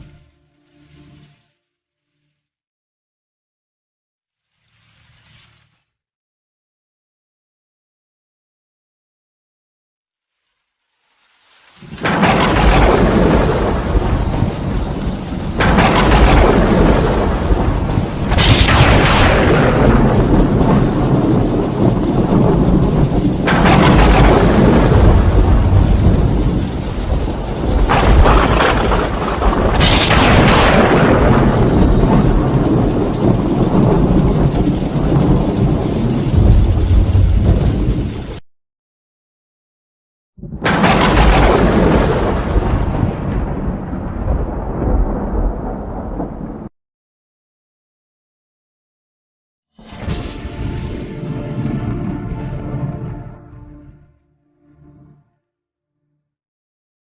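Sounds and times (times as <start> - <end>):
heavy rain: 11.0 - 38.4, 40.7 - 46.7, 49.9 - 53.7
low rolling thunder: 11.9 - 38.4, 40.4 - 46.7, 50.1 - 53.6
sharp thunderclaps: 11.9 - 38.4, 40.4 - 46.7.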